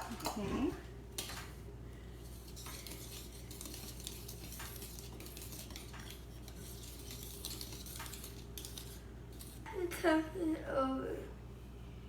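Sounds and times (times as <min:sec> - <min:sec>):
utensil scraping and clinking in bowl: 0:02.2 - 0:09.7.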